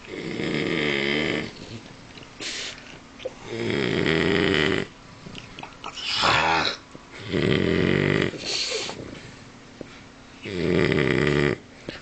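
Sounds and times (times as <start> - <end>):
dog snoring: 0.0 - 1.8, 3.4 - 4.9, 6.1 - 9.1, 10.4 - 11.6.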